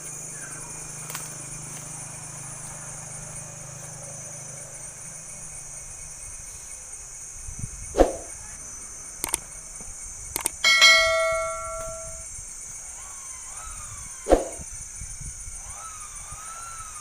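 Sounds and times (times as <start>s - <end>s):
sharp clicks: 9.2s - 9.5s, 10.3s - 10.6s
metal object ringing: 10.6s - 12.2s.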